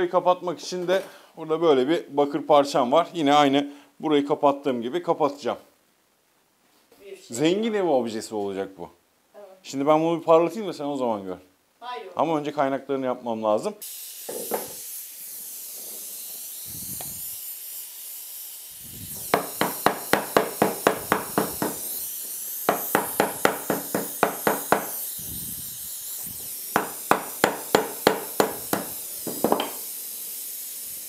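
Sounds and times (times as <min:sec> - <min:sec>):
torch hissing: 0:13.8 - 0:31.0
hammer striking metal: 0:26.8 - 0:29.8.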